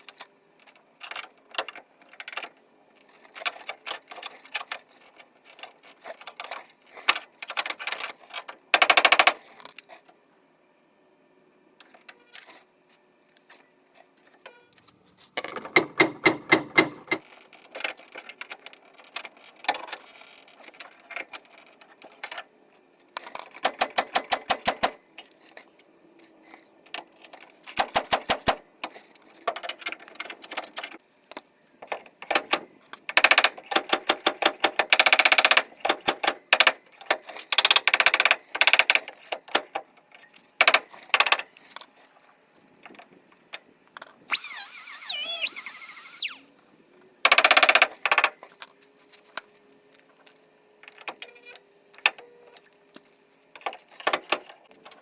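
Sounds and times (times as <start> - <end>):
impact wrench hammering: 15.7 - 17.2.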